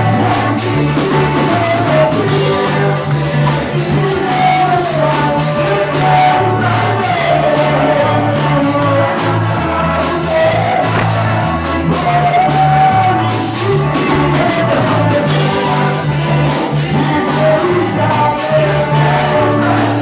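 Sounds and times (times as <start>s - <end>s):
bass line: 0.0s - 20.0s
voices singing over instruments: 0.0s - 20.0s.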